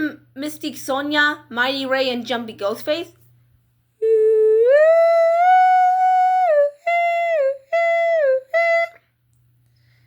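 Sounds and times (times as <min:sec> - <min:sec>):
person singing wordless notes: 0:04.0 - 0:09.0.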